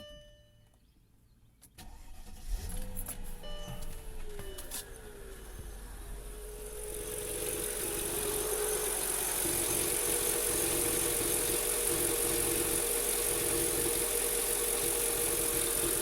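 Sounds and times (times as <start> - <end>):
car engine idling with gurgle: 2.2 - 16.0.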